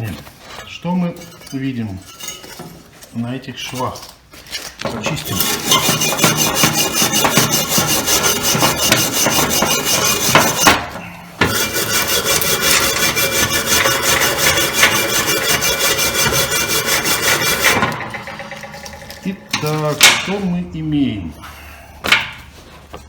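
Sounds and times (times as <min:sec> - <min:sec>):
wire brush scrubbing steel: 0:05.2 - 0:20.6.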